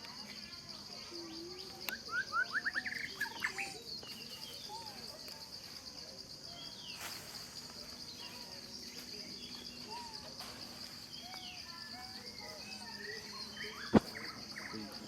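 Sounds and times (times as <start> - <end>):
insect trill: 0.0 - 15.0
bird chirps: 1.2 - 5.2, 8.1 - 15.0.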